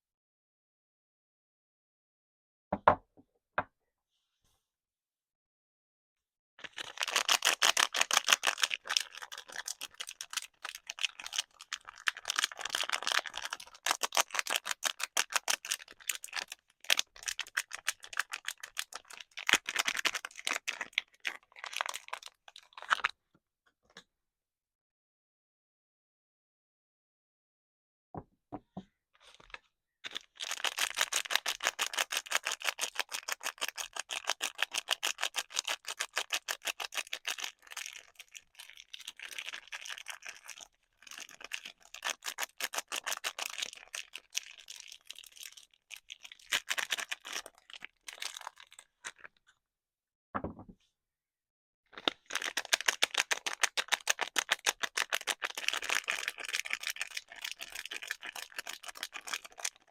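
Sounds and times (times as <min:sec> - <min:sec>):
dull knock: 0:02.8 - 0:03.0, 0:50.4 - 0:50.8
wrapping crinkling and tearing: 0:06.6 - 0:23.1, 0:29.2 - 0:49.4, 0:52.0 - 0:59.9.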